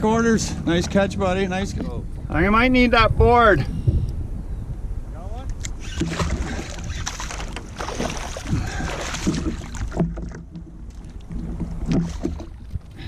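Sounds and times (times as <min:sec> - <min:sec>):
wind buffeting microphone: 0:00.0 - 0:13.0
knocks and clatters on kayak: 0:05.6 - 0:13.0.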